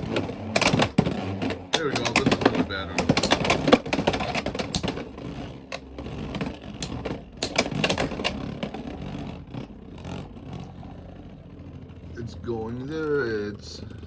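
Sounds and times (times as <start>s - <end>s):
spinning tops whirring: 0.0s - 12.2s.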